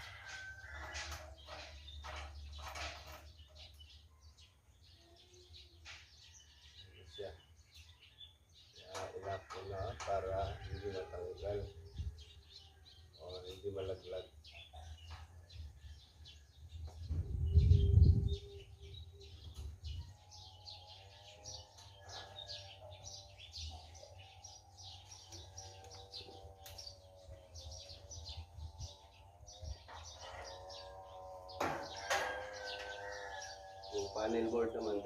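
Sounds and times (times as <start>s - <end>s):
small birds chirping: 0.0s - 35.0s
low rumble on microphone: 16.8s - 20.3s.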